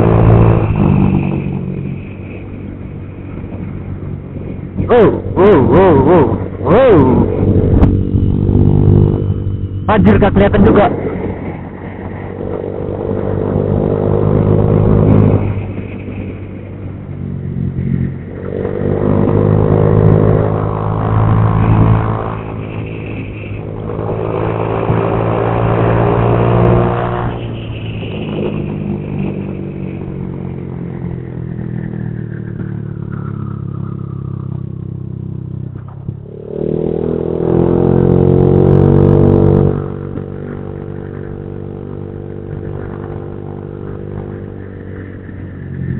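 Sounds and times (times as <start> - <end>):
high whine falling in pitch: 0.0 - 45.9.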